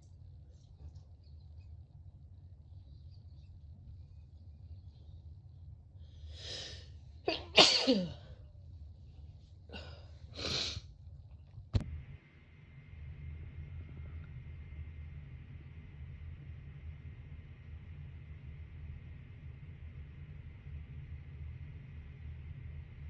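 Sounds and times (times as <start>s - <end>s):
person sneezing: 7.3s - 8.3s.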